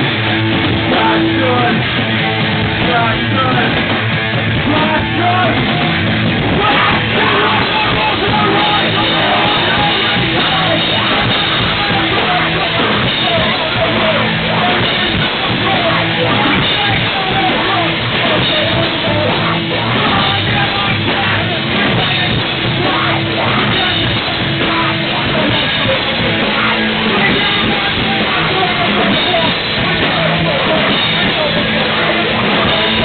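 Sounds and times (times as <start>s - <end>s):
person singing and yelling: 0.0s - 33.0s
punk rock band playing: 0.0s - 33.0s.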